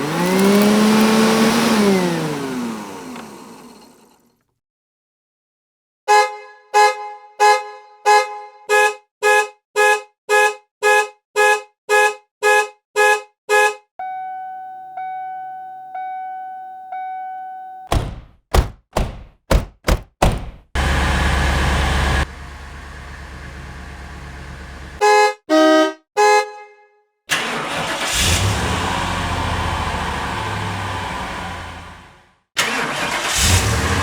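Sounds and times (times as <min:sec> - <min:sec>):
short horn-like chord beeps: 0:13.0 - 0:17.9, 0:25.0 - 0:27.0
sharp knocks: 0:17.9 - 0:20.8.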